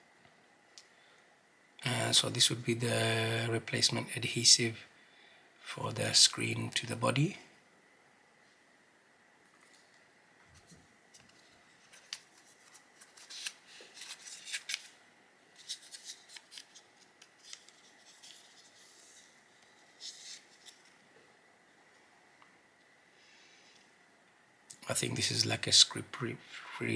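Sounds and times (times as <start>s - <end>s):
plastic packaging crinkling: 11.2s - 15.0s, 15.6s - 19.4s, 20.0s - 21.0s.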